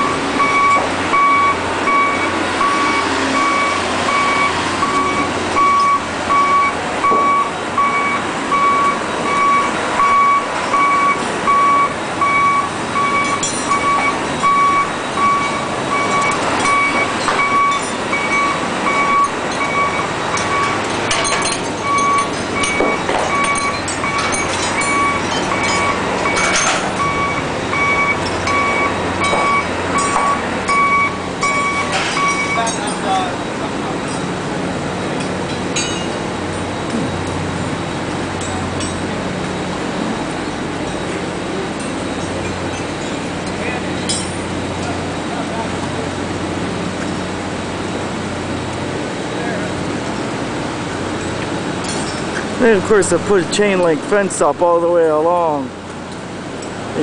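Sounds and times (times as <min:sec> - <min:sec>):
reversing alarm beeping: 0:00.0 - 0:34.3
machinery running: 0:00.0 - 0:57.0
sharp metal clanks and knocks: 0:13.1 - 0:14.6, 0:15.3 - 0:33.3, 0:35.2 - 0:36.2, 0:38.3 - 0:39.2, 0:41.8 - 0:45.0, 0:51.2 - 0:52.6.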